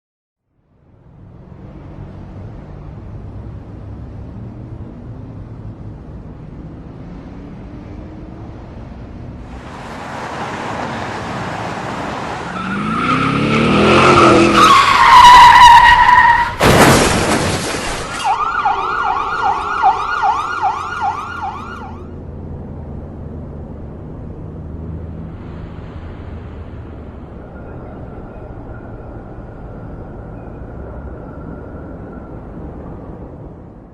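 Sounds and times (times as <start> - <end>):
engine revving: 9.5 - 14.8
tyres screeching: 11.2 - 22.1
heavy crash impact: 16.5 - 18.4
wailing alarm tone: 18.2 - 22.1.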